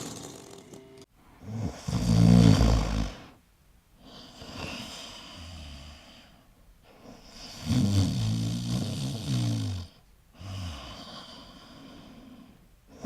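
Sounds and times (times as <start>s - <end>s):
koala snoring: 1.4s - 3.4s
koala breathing: 10.3s - 13.0s.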